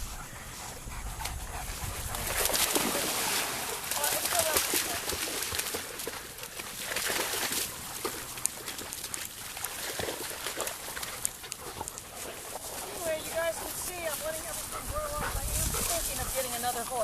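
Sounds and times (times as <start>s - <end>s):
footsteps through long grass: 7.7s - 16.8s.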